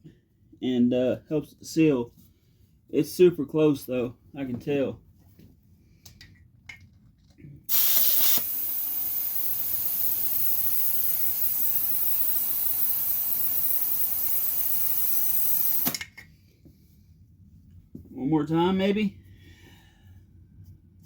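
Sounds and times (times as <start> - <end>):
pressurized gas hissing: 7.7 - 16.0.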